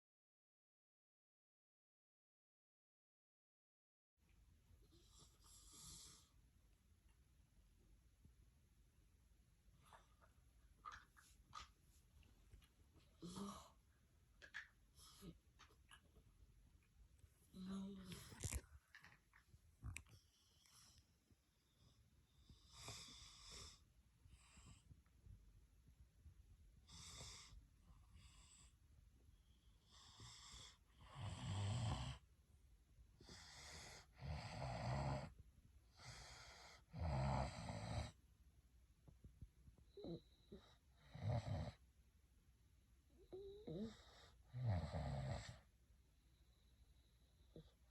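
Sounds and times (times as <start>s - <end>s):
person snoring: 30.0s - 32.2s.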